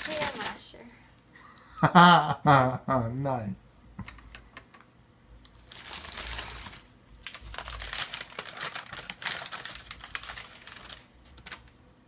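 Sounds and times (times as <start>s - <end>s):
packaging crinkling and rustling: 0.0s - 0.7s, 5.5s - 11.8s.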